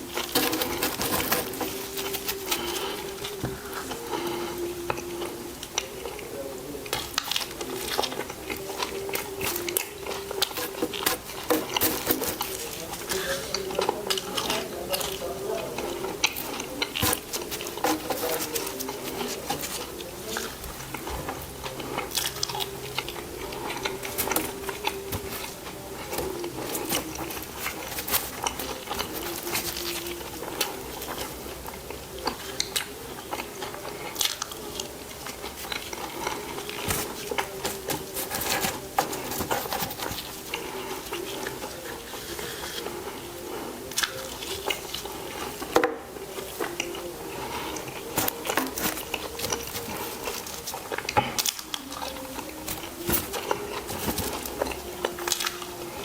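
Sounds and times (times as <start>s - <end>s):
chewing food close up: 0.0s - 56.0s.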